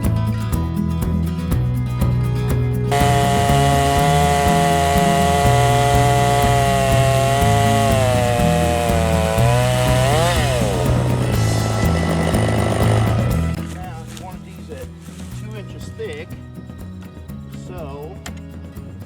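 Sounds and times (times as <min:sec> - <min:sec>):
chainsaw cutting log: 0:02.9 - 0:13.7.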